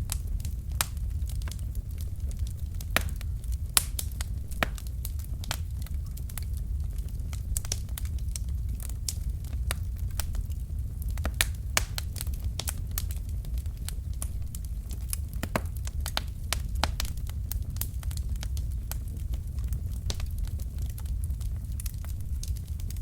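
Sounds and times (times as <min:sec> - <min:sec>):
burning logs crackling and popping: 0:00.0 - 0:23.0
low rumble of flames: 0:00.0 - 0:23.0.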